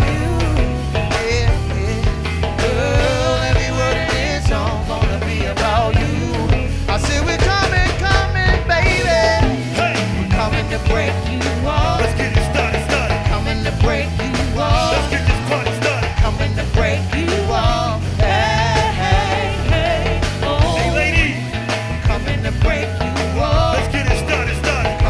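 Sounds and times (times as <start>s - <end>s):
live band bass and drum groove: 0.0s - 25.0s.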